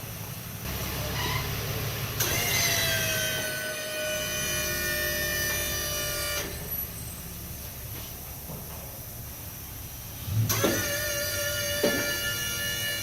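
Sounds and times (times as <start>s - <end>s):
low shop hum: 0.0s - 13.0s
motor-driven tool whine: 2.2s - 6.8s, 10.5s - 13.0s.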